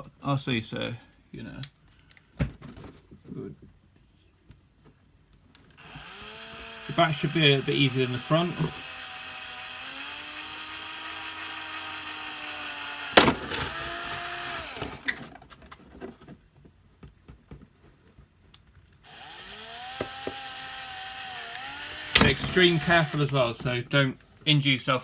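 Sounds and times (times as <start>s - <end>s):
electric drill whining: 5.7s - 15.2s, 18.9s - 23.4s.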